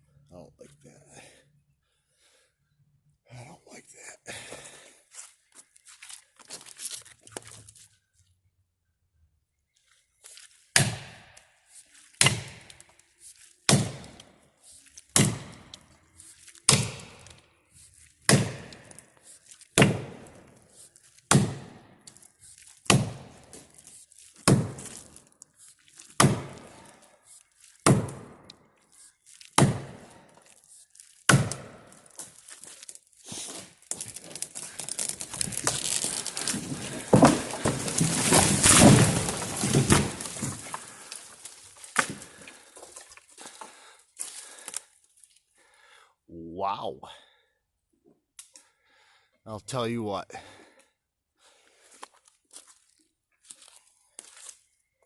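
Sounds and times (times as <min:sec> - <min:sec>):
wood splitting crackle: 0:05.6 - 0:08.0, 0:09.8 - 0:45.9, 0:51.5 - 0:54.7
axe chopping wood: 0:10.7 - 0:11.4, 0:12.2 - 0:12.8, 0:13.6 - 0:14.3, 0:15.1 - 0:15.8, 0:16.6 - 0:17.4, 0:18.2 - 0:19.0, 0:19.8 - 0:20.6, 0:21.3 - 0:22.1, 0:22.8 - 0:23.7, 0:24.4 - 0:25.1, 0:26.1 - 0:27.0, 0:27.8 - 0:28.6, 0:29.5 - 0:30.2, 0:31.3 - 0:32.0, 0:34.8 - 0:41.3, 0:41.9 - 0:42.4
tree crashing down: 0:33.8 - 0:43.0.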